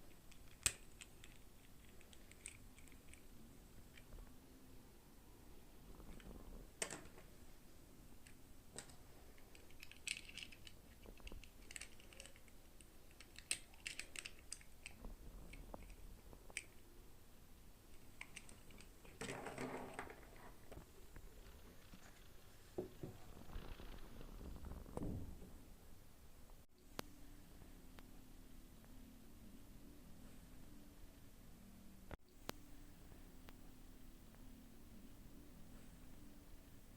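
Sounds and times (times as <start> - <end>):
plastic toy parts clicking: 0.3 - 3.3, 8.2 - 15.0, 18.0 - 19.3.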